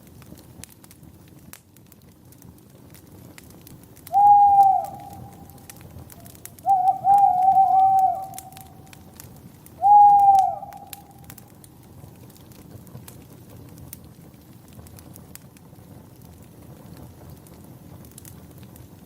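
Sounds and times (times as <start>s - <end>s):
wood fire crackling: 0.0s - 19.0s
bird hooting: 4.1s - 9.1s, 9.8s - 11.4s.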